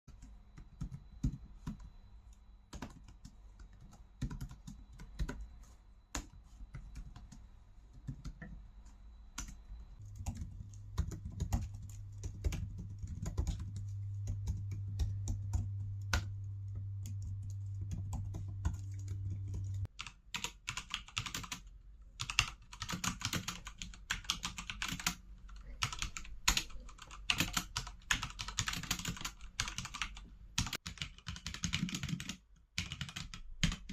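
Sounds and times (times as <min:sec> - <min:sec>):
mechanical keyboard typing: 0:00.1 - 0:01.9, 0:02.7 - 0:05.4, 0:09.4 - 0:21.6, 0:22.2 - 0:33.9
steady low hum: 0:00.1 - 0:19.9
laptop keyboard typing: 0:00.1 - 0:33.9.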